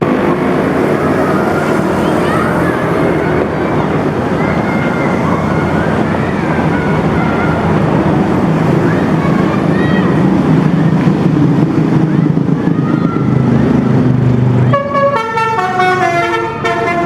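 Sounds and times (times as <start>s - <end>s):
loud engine: 0.0s - 17.0s
street noise: 0.0s - 17.0s
multi-tone bus horn melody: 14.6s - 17.0s.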